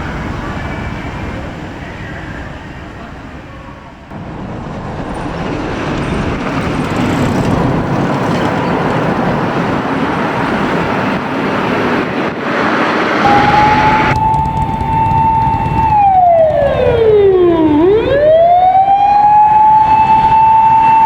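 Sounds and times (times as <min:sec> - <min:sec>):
fire engine engine and road noise: 0:00.0 - 0:21.0
siren rising tone: 0:13.2 - 0:21.0.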